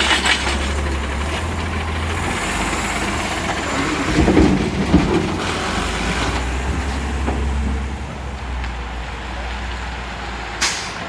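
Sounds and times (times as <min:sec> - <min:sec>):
garbage truck engine running: 0:00.0 - 0:11.0
metal clatter with knock: 0:04.0 - 0:07.5.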